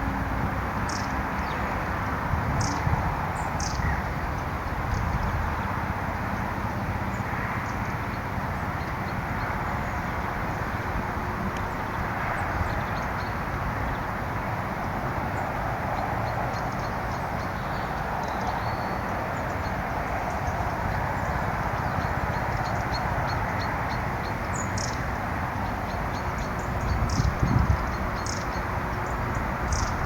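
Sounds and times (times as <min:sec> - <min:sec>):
outdoor background rumble and hiss: 0:00.0 - 0:30.0
small birds chirping: 0:00.9 - 0:01.7, 0:02.5 - 0:10.7, 0:15.3 - 0:30.0.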